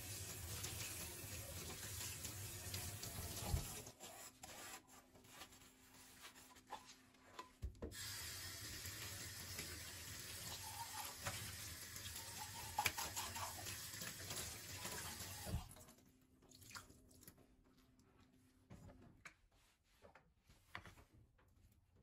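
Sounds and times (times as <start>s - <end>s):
tap water running into sink: 0.0s - 3.9s, 7.9s - 15.9s.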